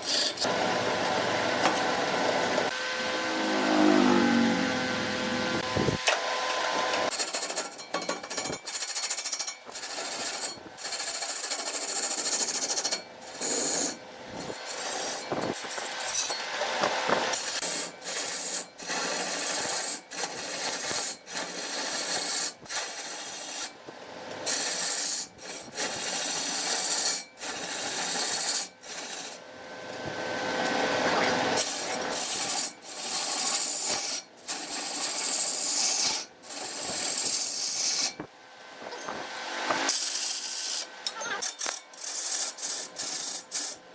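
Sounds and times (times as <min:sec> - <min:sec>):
tool scraping wood on lathe: 0:00.0 - 0:00.5, 0:06.9 - 0:23.8, 0:24.5 - 0:29.4, 0:30.7 - 0:38.3, 0:39.8 - 0:43.9.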